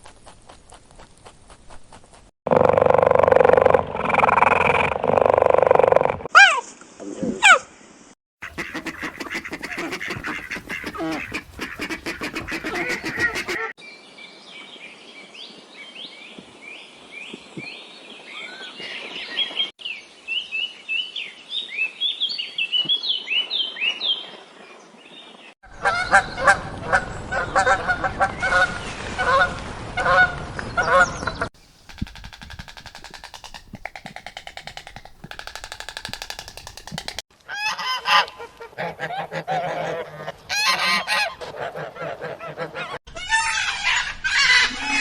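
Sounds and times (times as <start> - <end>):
poultry honking calls: 8.4 - 13.7.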